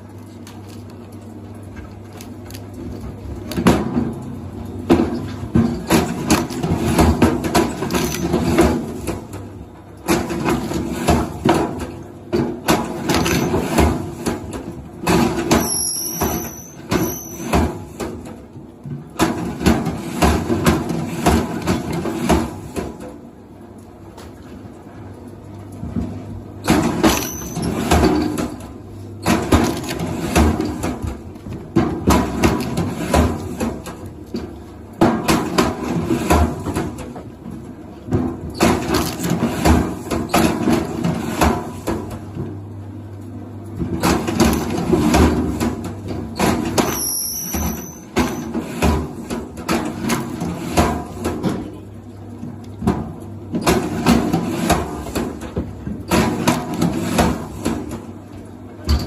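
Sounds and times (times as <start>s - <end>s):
high squeaks: 15.6s - 17.5s.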